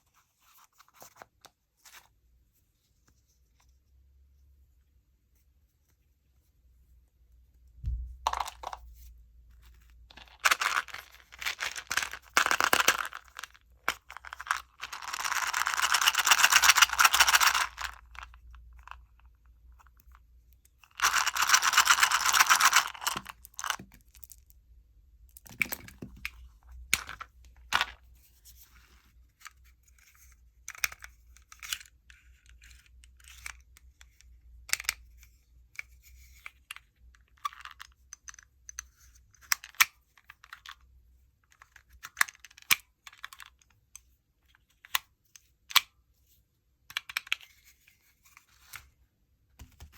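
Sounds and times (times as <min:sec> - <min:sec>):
plastic wrappers crinkling: 0:10.2 - 0:13.6.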